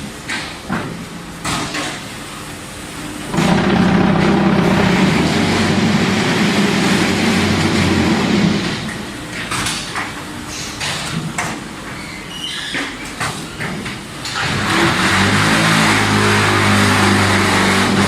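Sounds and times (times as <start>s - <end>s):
machine vibrating hum: 3.3s - 8.9s.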